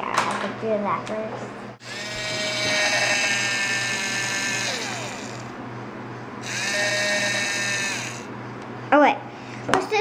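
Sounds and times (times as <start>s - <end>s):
toy drill motor whining: 1.8s - 5.6s, 6.4s - 8.3s.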